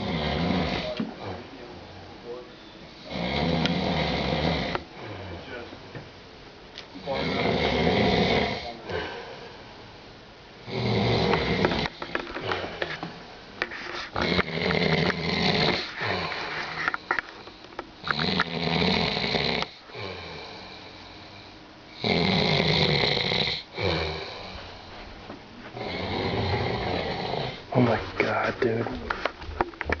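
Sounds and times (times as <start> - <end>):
man snoring: 0.0 - 1.5, 3.0 - 5.5, 7.0 - 9.2, 10.6 - 12.8, 14.1 - 16.9, 18.0 - 21.4, 22.0 - 24.6, 25.8 - 27.8
quiet breathing: 4.7 - 5.7, 8.6 - 10.0, 11.2 - 17.9, 19.6 - 22.0, 23.6 - 29.3.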